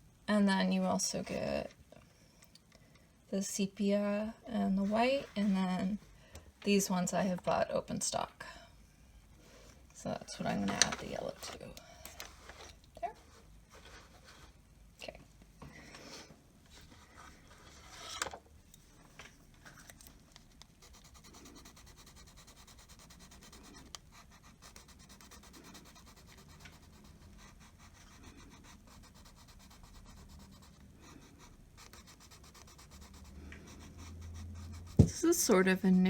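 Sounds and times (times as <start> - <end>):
pencils rubbing and scratching: 4.6 - 6.0, 16.8 - 18.4, 20.8 - 35.6
scrape on tabletop: 16.8 - 18.4.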